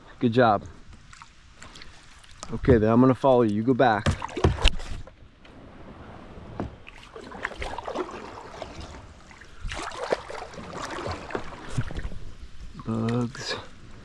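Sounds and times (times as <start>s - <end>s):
paddle splashing in water: 4.0s - 5.1s, 6.7s - 13.0s.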